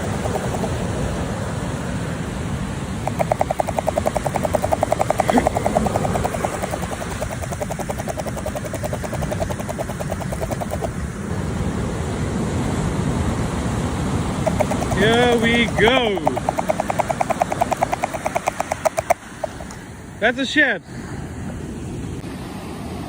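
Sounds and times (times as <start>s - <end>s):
fishing reel whirring: 0.0s - 1.0s, 3.1s - 10.9s, 14.5s - 19.8s
wind: 0.0s - 23.0s.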